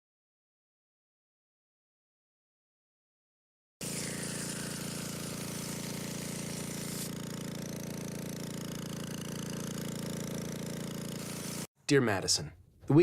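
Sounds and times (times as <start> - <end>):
motor running steadily: 3.8 - 11.7.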